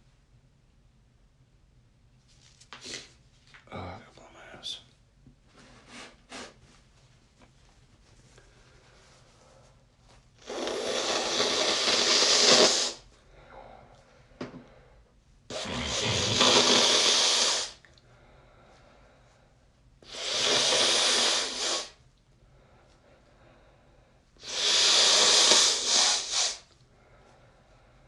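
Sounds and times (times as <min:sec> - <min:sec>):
nose blowing into tissue: 0:02.8 - 0:03.1, 0:10.4 - 0:13.1, 0:15.5 - 0:17.9, 0:20.0 - 0:22.0, 0:24.4 - 0:26.8.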